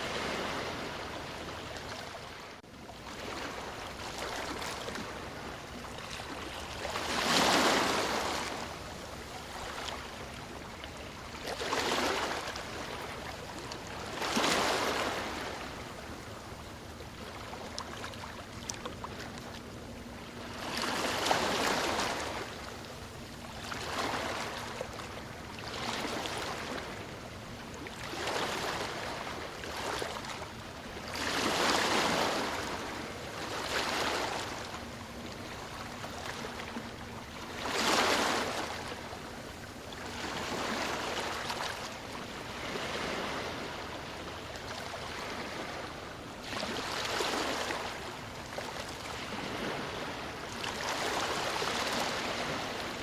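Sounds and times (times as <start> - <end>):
sea waves breaking: 0.0 - 53.0.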